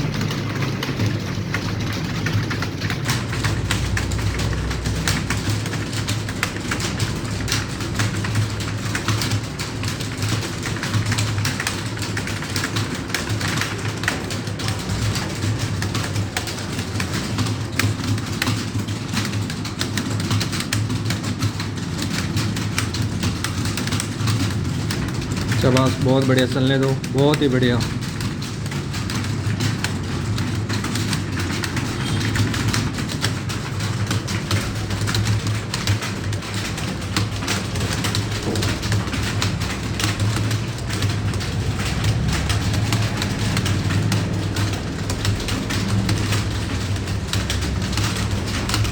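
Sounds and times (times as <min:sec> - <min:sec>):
keyboards clattering: 0:00.0 - 0:48.9.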